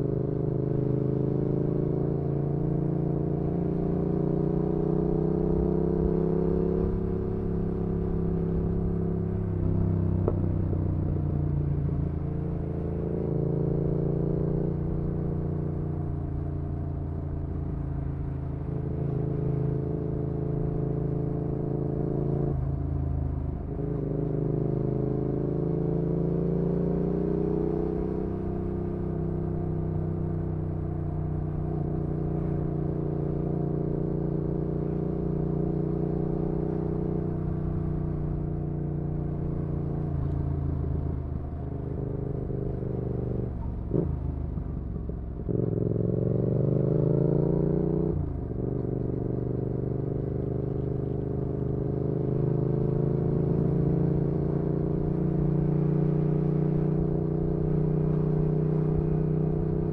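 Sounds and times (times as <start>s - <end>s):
motorcycle engine revving: 31.8s - 59.9s.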